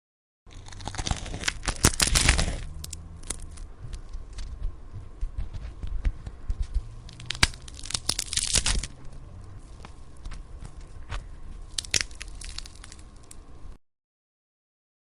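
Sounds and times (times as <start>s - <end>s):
cartoon clicks and crackles: 0.5s - 4.5s, 7.0s - 9.0s, 11.7s - 13.5s.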